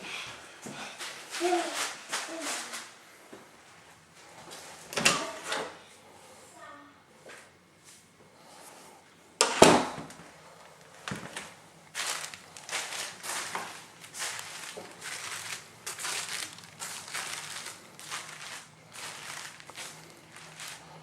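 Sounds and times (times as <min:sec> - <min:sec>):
scuffing and rustling: 0:10.8 - 0:21.0.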